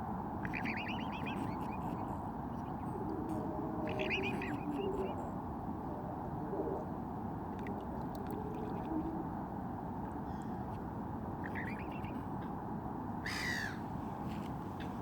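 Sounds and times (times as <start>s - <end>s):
wild birds calling: 0.4s - 5.3s, 11.4s - 12.2s, 13.2s - 13.9s.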